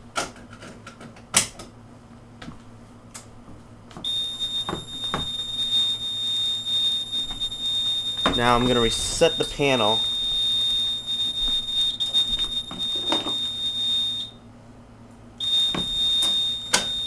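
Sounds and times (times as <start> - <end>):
high-pitched fire alarm tone: 4.0 - 14.4, 15.4 - 17.0
fire alarm pull station click: 10.1 - 14.3, 15.4 - 17.0.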